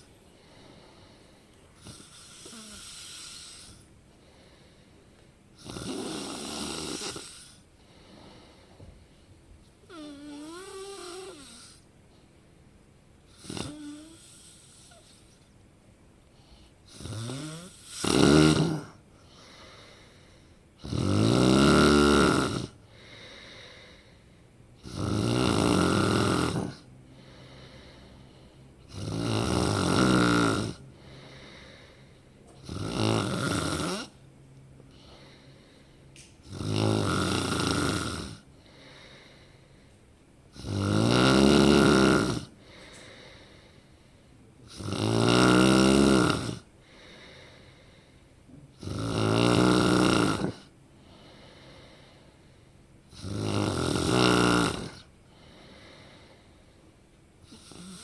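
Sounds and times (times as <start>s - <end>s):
soft breath: 0.0s - 5.4s, 7.3s - 12.7s, 16.2s - 16.9s, 19.1s - 20.7s, 22.8s - 24.6s, 27.0s - 28.9s, 30.9s - 32.6s, 34.8s - 36.2s, 38.4s - 40.2s, 42.6s - 44.5s, 46.8s - 48.7s, 51.0s - 52.9s, 55.2s - 58.0s
person snoring loudly: 1.8s - 3.8s, 5.6s - 7.6s, 9.9s - 11.8s, 13.3s - 15.2s, 16.9s - 19.0s, 20.8s - 22.8s, 24.8s - 27.5s, 28.9s - 31.9s, 32.6s - 34.2s, 36.4s - 39.2s, 40.5s - 42.5s, 44.7s - 47.2s, 48.8s - 50.7s, 53.1s - 55.1s, 57.4s - 58.0s.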